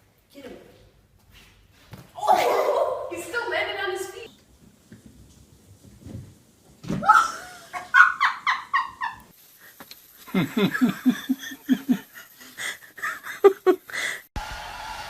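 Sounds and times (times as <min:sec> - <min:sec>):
people laughing: 0:07.2 - 0:09.3, 0:10.2 - 0:14.0.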